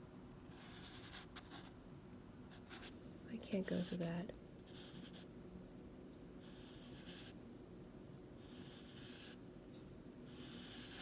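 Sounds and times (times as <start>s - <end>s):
drawing tool scratching paper: 0.5s - 1.7s, 3.6s - 5.3s, 6.4s - 7.4s, 8.4s - 9.4s, 10.3s - 11.0s.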